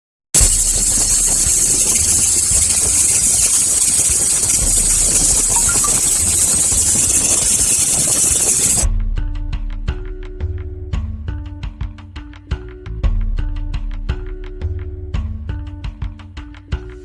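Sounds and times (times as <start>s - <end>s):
hiss of shielding gas: 0.4s - 8.9s.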